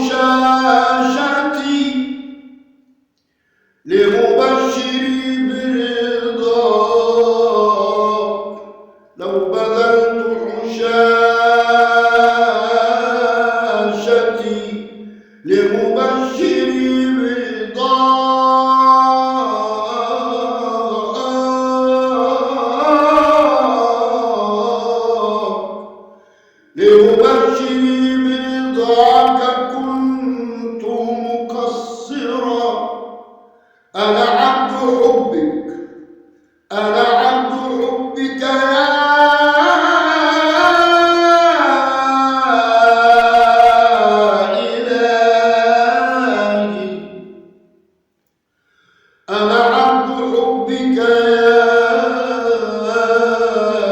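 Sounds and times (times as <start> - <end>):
man singing devotional song: 0.0 - 2.6, 3.8 - 26.1, 26.7 - 35.9, 36.6 - 47.4, 49.2 - 53.9.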